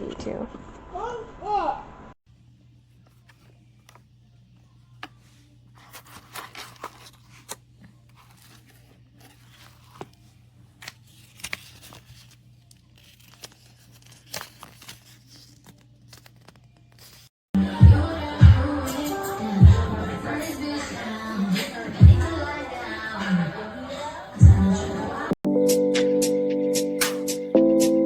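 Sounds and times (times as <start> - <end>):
music: 17.6 - 28.0.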